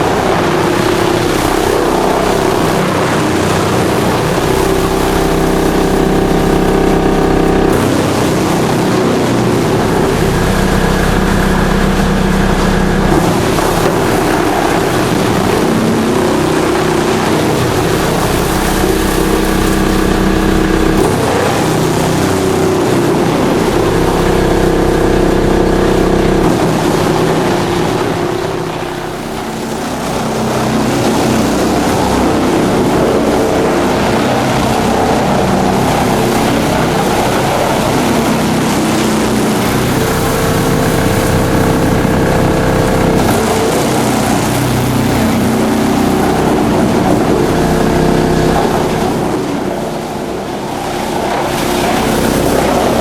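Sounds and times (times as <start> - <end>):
drum chipper engine running: 0.0 - 53.0.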